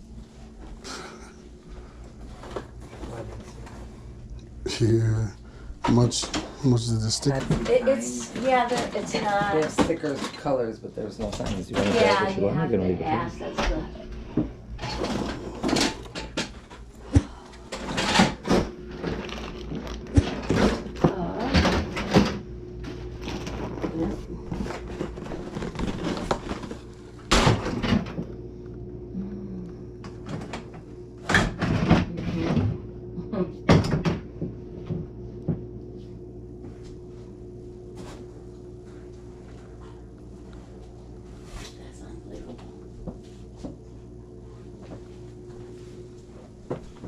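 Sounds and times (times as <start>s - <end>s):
items rustling and knocking: 0.5s - 4.1s, 5.8s - 10.6s, 13.7s - 28.2s.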